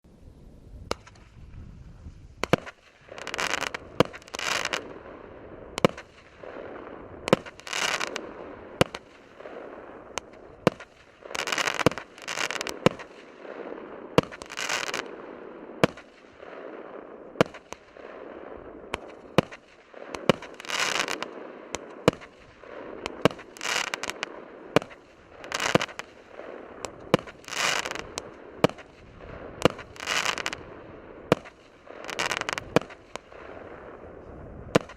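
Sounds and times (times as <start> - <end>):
crackling fireworks stars: 0.0 - 34.9
fireworks shots: 0.1 - 34.9.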